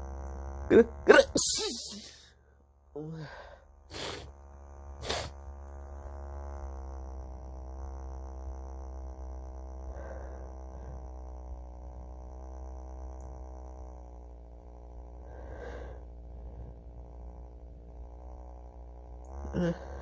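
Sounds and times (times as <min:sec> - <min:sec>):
electric vibrator buzzing: 0:00.0 - 0:20.0
faint breath: 0:03.1 - 0:04.3, 0:05.0 - 0:05.4, 0:09.9 - 0:11.2, 0:15.2 - 0:16.8.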